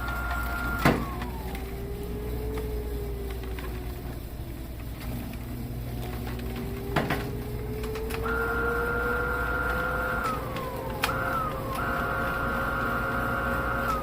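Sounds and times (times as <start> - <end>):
higher whine: 0.0 - 14.0
small electric motor whining: 0.0 - 14.0.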